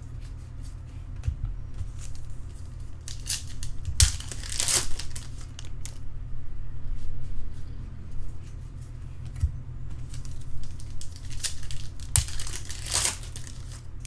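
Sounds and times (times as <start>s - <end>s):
foil wrappers crinkling and tearing: 1.9s - 6.0s, 10.0s - 14.0s.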